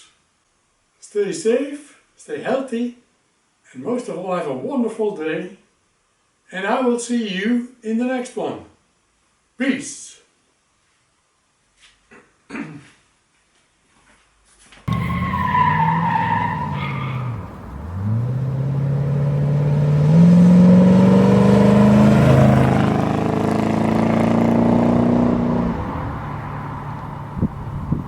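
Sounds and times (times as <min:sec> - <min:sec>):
car tyres squealing: 0:14.9 - 0:24.2
car engine revving and accelerating: 0:14.9 - 0:27.9.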